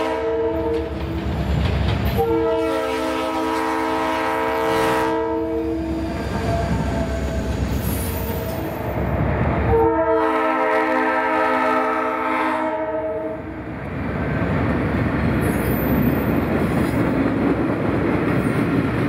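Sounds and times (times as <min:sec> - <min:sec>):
locomotive air horn blast: 0:00.0 - 0:01.0, 0:02.1 - 0:08.7, 0:09.7 - 0:13.4
train rumbling: 0:00.0 - 0:19.0.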